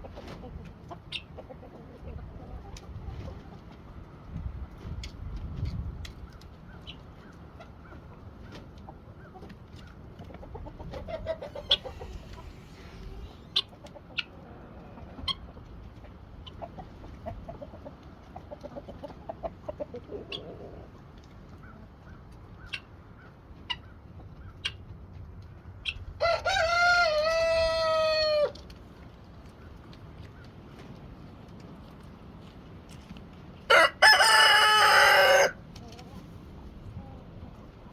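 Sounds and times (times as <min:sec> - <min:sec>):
chickens clucking: 0:00.0 - 0:05.0, 0:06.1 - 0:24.9
wind rumble on microphone: 0:02.0 - 0:06.7
rooster crowing: 0:33.7 - 0:35.6.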